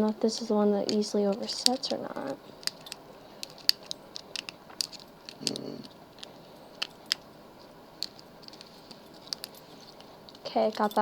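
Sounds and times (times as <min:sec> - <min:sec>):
lock pick metal clicks: 0:02.6 - 0:07.3, 0:08.0 - 0:11.0.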